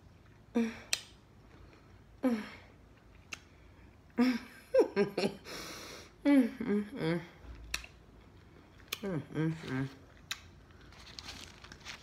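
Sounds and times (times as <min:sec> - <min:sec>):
woman humming and murmuring: 0:06.2 - 0:07.5, 0:09.0 - 0:10.0.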